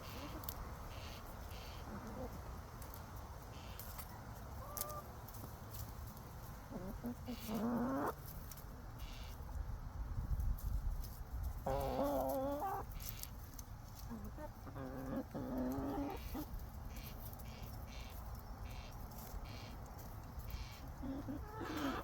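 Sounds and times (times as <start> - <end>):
hens calling: 0.0 - 5.1, 6.6 - 9.5, 11.6 - 22.0
light pecking ticks: 10.6 - 22.0.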